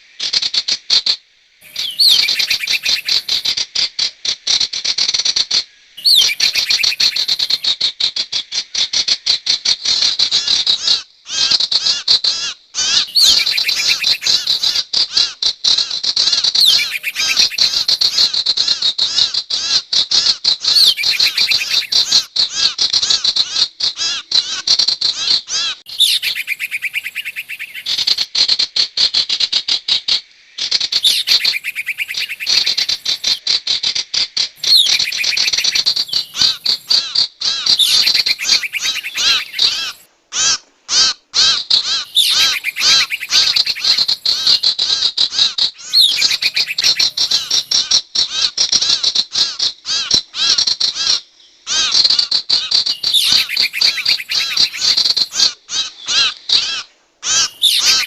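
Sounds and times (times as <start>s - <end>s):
bird chirps and trills: 1.6s - 3.5s, 6.0s - 7.7s, 12.8s - 14.8s, 16.5s - 18.3s, 20.6s - 22.3s, 25.5s - 28.2s, 30.8s - 33.5s, 34.6s - 40.1s, 41.8s - 47.9s, 52.6s - 58.0s.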